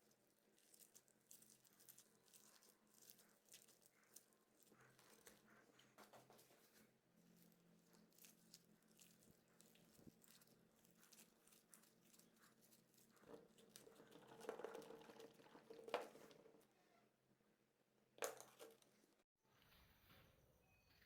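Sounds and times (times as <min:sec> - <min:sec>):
slime being kneaded by hand: 0:00.0 - 0:14.4.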